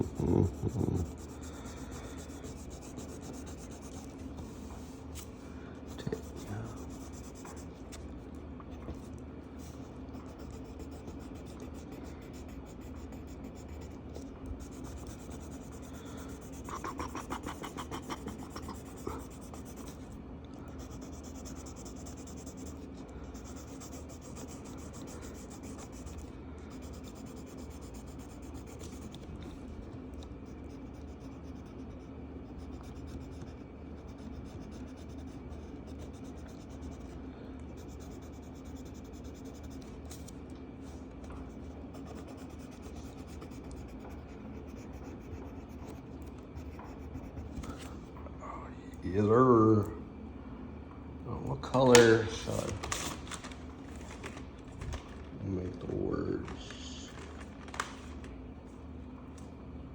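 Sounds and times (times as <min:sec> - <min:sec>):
marker scratching on paper: 0:00.0 - 0:20.2, 0:20.8 - 0:29.6, 0:30.2 - 0:47.9.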